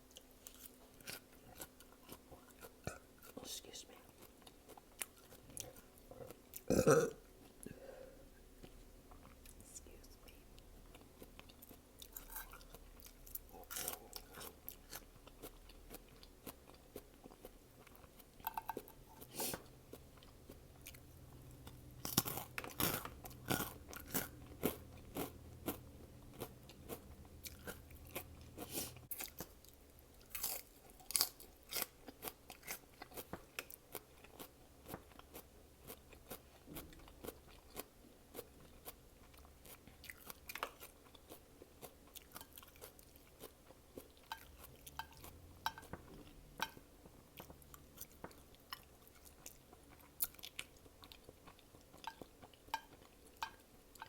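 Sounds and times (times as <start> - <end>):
person chewing crunchy food: 0.4 - 3.4, 4.1 - 7.6, 10.9 - 54.0.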